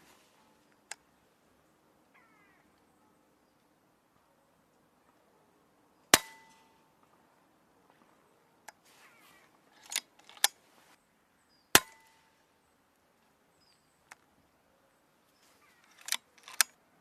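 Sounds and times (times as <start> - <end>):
side lever clicks and rasp: 15.8 - 16.7.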